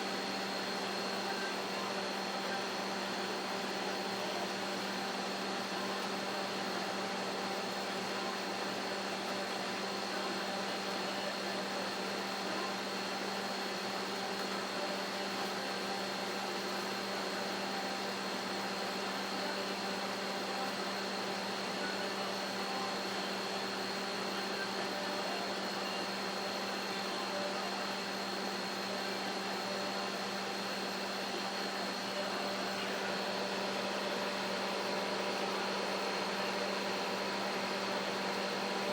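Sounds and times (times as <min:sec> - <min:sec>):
microwave oven humming: 0:00.0 - 0:38.9.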